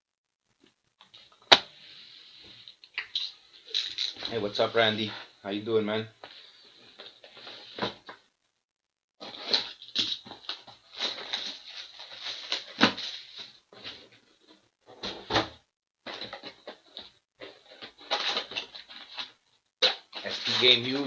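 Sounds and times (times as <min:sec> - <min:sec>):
plastic wrap crinkling: 0:09.2 - 0:13.6, 0:16.2 - 0:21.0.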